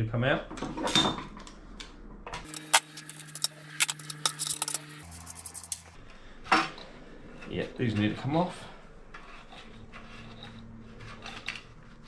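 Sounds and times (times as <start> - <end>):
metal tools clinking: 2.5 - 5.9.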